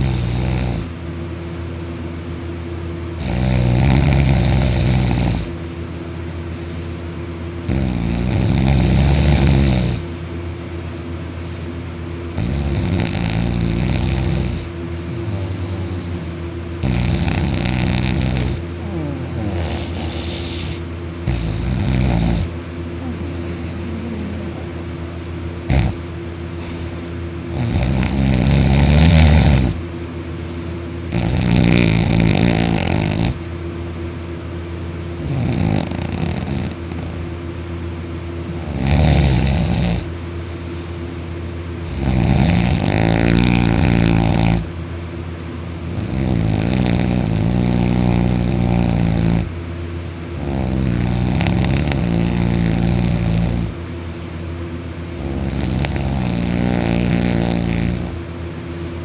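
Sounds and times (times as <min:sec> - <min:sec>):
loud rattling snore: 0:00.0 - 0:00.9, 0:03.2 - 0:05.6, 0:07.6 - 0:10.1, 0:12.4 - 0:24.8, 0:25.7 - 0:26.0, 0:26.6 - 0:29.8, 0:30.6 - 0:33.4, 0:35.2 - 0:37.3, 0:38.4 - 0:40.9, 0:41.8 - 0:44.7, 0:45.9 - 0:49.6, 0:50.3 - 0:53.8, 0:55.1 - 0:58.2
quiet breathing: 0:06.4 - 0:07.2, 0:26.6 - 0:27.3, 0:40.4 - 0:41.2.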